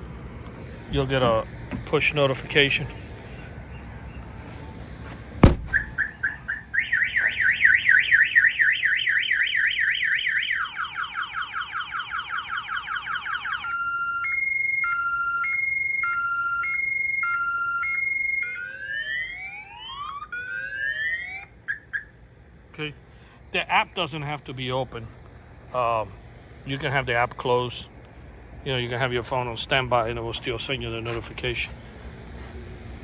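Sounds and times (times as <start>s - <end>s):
sharp knock: 5.4s - 5.8s
car alarm siren: 5.4s - 22.2s.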